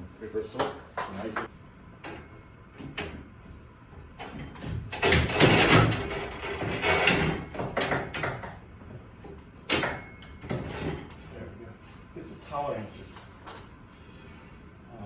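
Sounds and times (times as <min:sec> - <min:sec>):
metal clanking and scraping: 0:04.2 - 0:08.6.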